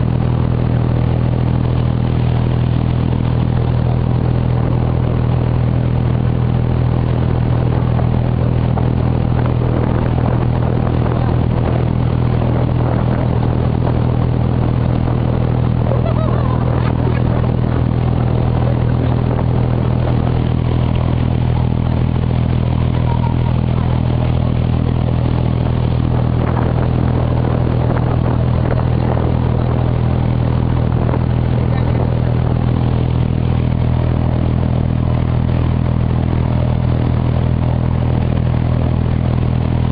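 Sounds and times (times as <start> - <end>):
diesel boat engine hum: 0.0 - 39.9.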